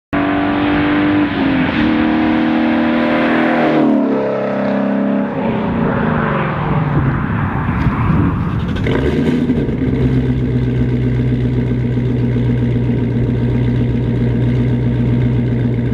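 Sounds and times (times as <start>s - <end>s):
car engine revving and burbling: 0.1s - 15.9s.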